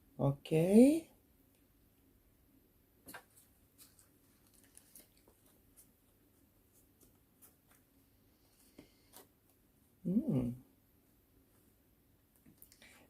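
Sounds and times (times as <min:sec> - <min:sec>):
person humming: 0:10.0 - 0:10.7.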